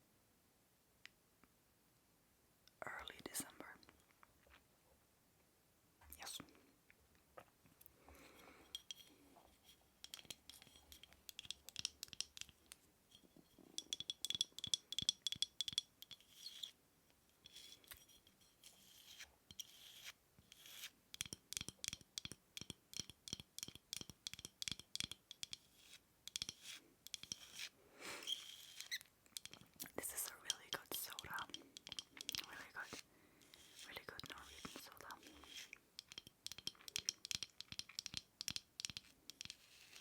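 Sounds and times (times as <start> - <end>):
light tapping on hard object: 10.0 - 12.8, 13.8 - 16.2, 21.2 - 25.7, 29.3 - 33.0, 33.6 - 39.6.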